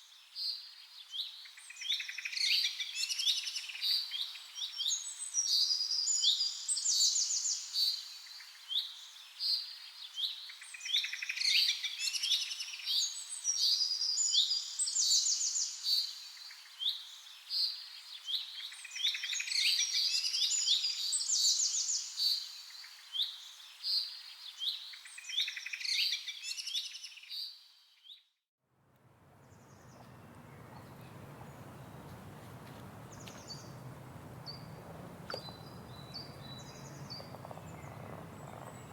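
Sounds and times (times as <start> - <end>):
songbirds chirping and trilling: 29.2 - 38.9.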